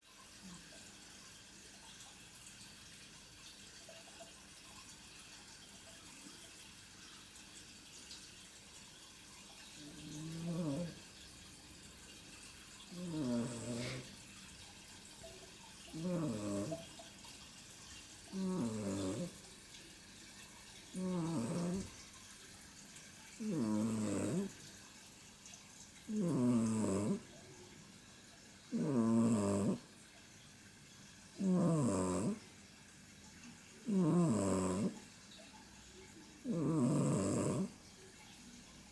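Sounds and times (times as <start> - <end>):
pet snoring: 9.8 - 11.1, 12.9 - 14.2, 15.9 - 17.0, 18.3 - 19.5, 20.9 - 22.0, 23.4 - 24.8, 26.1 - 27.4, 28.7 - 29.9, 31.4 - 32.5, 33.8 - 35.0, 36.4 - 37.8.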